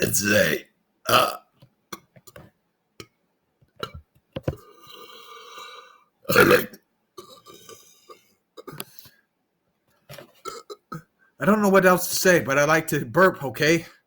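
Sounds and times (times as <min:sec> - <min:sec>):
man belching: 0:00.0 - 0:02.0, 0:06.3 - 0:07.9, 0:10.4 - 0:11.1.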